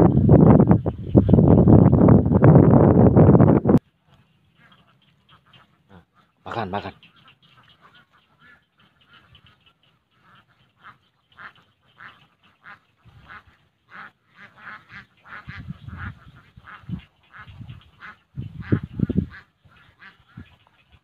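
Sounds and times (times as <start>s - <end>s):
bird calls: 3.8s - 21.0s.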